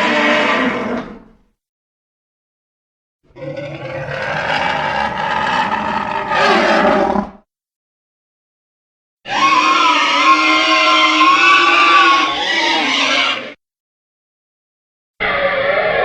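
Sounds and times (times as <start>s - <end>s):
harsh dinosaur call: 0.0s - 1.2s, 3.3s - 7.4s, 9.3s - 13.6s, 15.2s - 16.0s.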